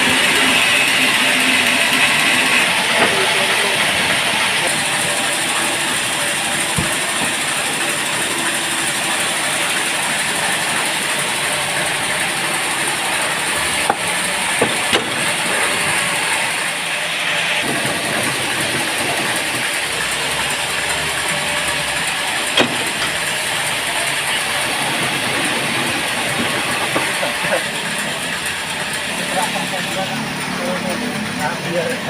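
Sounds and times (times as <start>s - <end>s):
band saw machinery running: 0.0s - 32.0s
sharp knocks: 4.8s - 8.7s, 13.8s - 16.6s, 22.5s - 23.4s.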